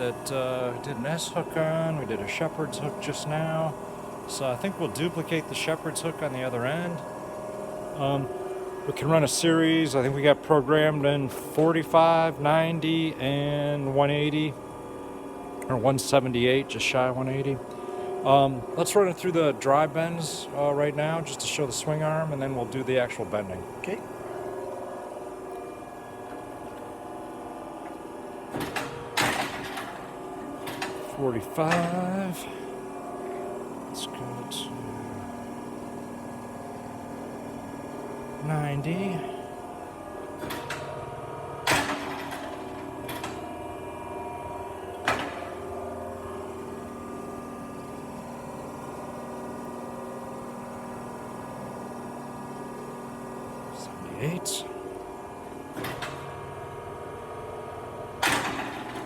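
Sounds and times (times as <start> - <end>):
hydraulic machine humming: 0.0 - 59.0
machine clack with hiss: 28.5 - 32.4, 40.4 - 41.0, 41.6 - 43.4, 58.2 - 59.0.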